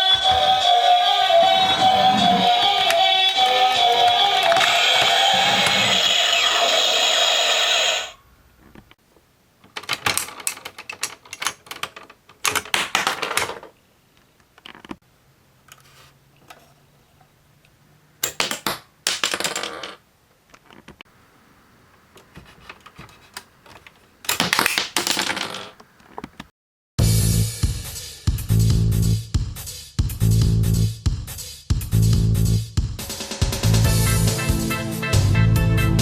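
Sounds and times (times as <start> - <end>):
plastic toy parts clicking: 9.6 - 13.7.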